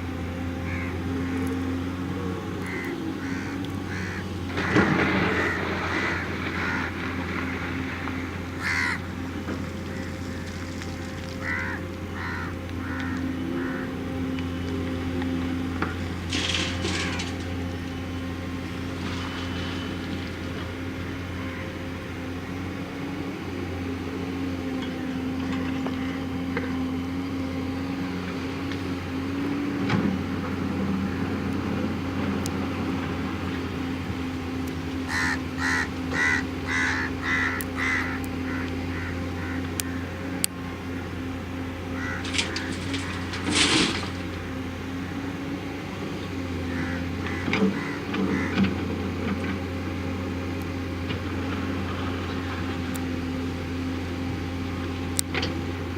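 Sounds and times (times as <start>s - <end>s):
diesel engine running: 0.0s - 55.9s
clattering scrape: 42.2s - 44.4s.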